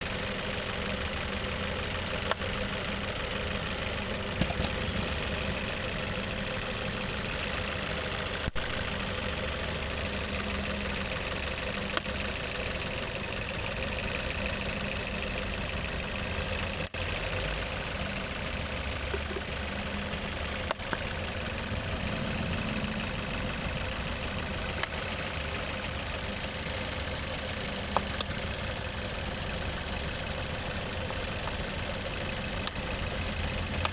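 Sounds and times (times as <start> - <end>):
car engine idling: 0.0 - 33.9.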